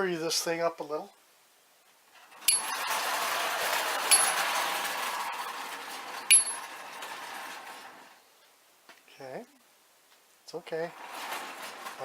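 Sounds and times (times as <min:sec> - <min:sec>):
toy train clattering on track: 0:02.2 - 0:08.2, 0:10.8 - 0:12.0
sharp metallic clinks: 0:06.3 - 0:06.6.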